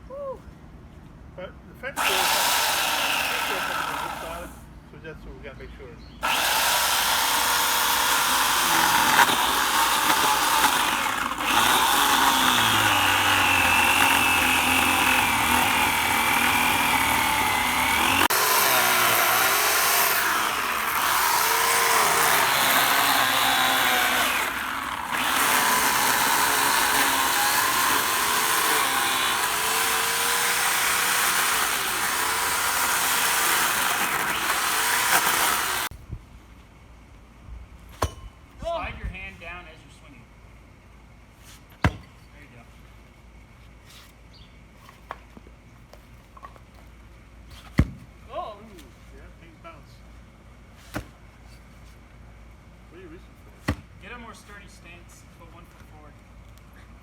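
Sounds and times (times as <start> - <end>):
electric power tool running: 2.0 - 4.6, 6.2 - 35.9.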